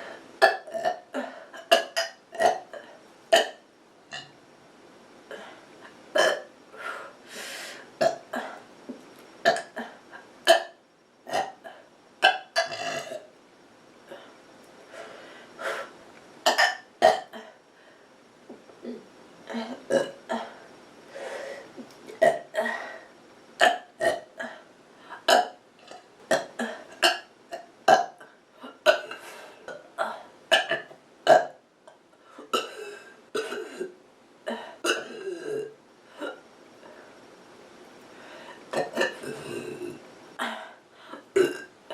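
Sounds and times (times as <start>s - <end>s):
person burping: 0.4s - 4.3s, 6.1s - 6.5s, 8.0s - 8.6s, 9.4s - 13.3s, 16.4s - 17.6s, 18.8s - 20.6s, 22.1s - 22.8s, 23.6s - 24.6s, 25.2s - 31.6s, 32.5s - 36.4s, 38.7s - 41.9s.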